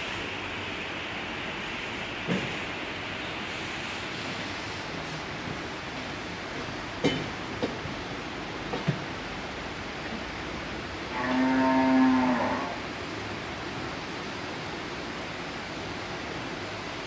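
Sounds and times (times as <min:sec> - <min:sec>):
cow mooing: 0:11.1 - 0:12.9.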